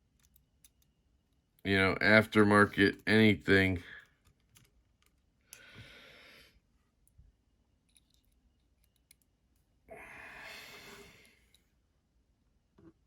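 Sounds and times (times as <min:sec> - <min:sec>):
small clicks of screws: 0:00.1 - 0:00.9, 0:04.0 - 0:05.7, 0:07.9 - 0:09.3
breathy exhales: 0:05.6 - 0:06.6, 0:09.9 - 0:11.5.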